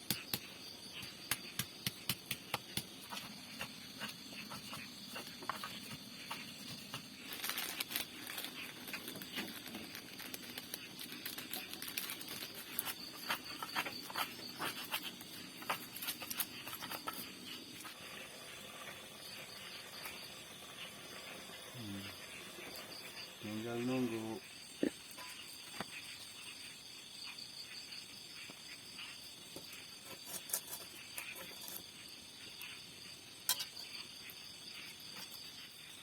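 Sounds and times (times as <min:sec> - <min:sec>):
insects chirring: 0:00.0 - 0:36.0
sharp clicks and crackles: 0:06.9 - 0:14.2.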